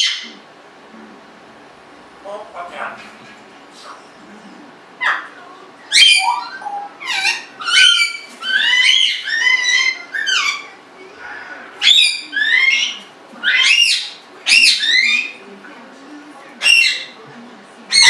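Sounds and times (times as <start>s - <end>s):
parrot whistling calls: 5.9s - 10.6s, 11.8s - 15.4s.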